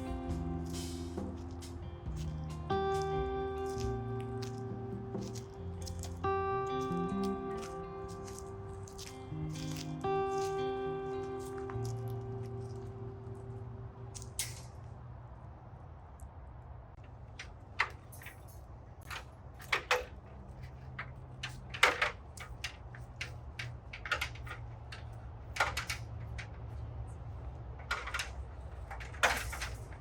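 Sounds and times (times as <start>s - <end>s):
steady low hum: 0.0s - 17.1s
metal fencing clinking and rattling: 17.0s - 30.0s.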